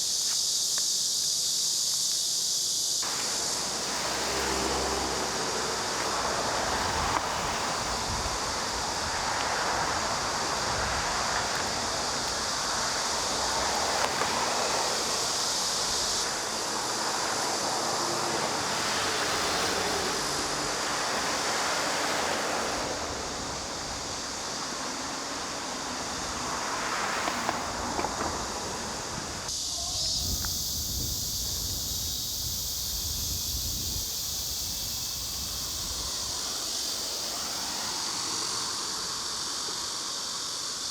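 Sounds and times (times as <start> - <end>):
steady high hiss: 0.0 - 40.9
wind on microphone: 6.1 - 13.6, 27.7 - 36.9.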